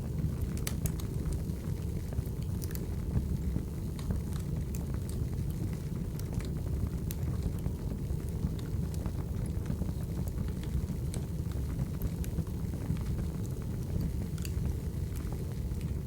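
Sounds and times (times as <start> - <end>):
burning logs crackling and popping: 0.0 - 16.0
fire low rumble: 0.0 - 16.0.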